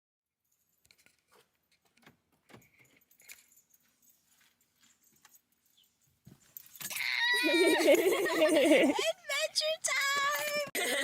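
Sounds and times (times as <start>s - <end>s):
faint light clicks and rattles: 0.5s - 7.0s.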